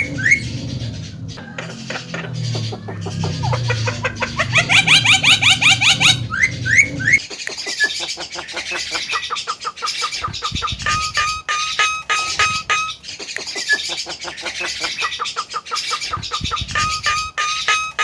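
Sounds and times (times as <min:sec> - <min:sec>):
low hum: 0:00.0 - 0:07.2
bird chirping and whistling: 0:00.0 - 0:08.0, 0:10.0 - 0:14.2, 0:16.0 - 0:18.0.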